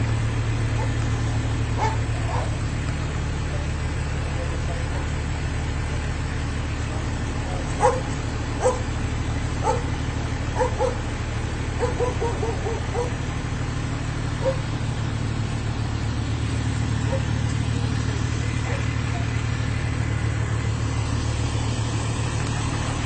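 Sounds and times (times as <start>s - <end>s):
dog barking: 0.8s - 1.0s, 1.8s - 2.6s, 7.8s - 8.9s, 9.6s - 9.9s, 10.6s - 11.0s, 11.8s - 13.2s, 14.4s - 14.6s, 17.0s - 17.3s, 18.6s - 19.3s.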